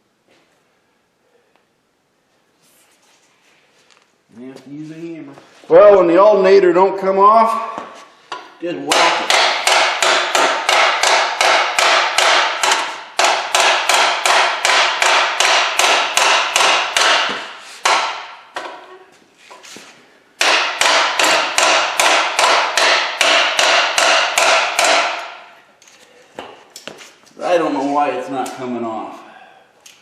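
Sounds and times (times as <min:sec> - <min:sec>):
hammer striking metal: 0:08.3 - 0:18.9, 0:20.4 - 0:25.6.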